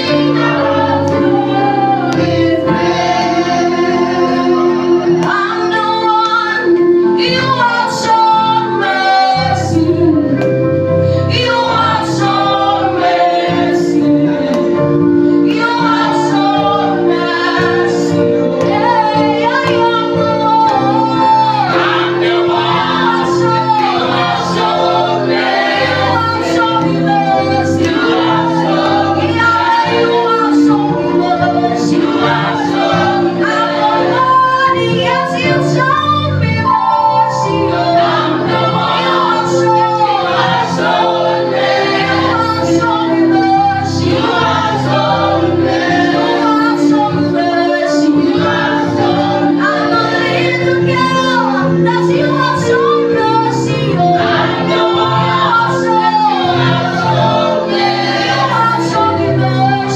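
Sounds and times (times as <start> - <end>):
choir singing gospel song: 0.0 - 59.9
instrumental accompaniment with beat: 8.8 - 35.2.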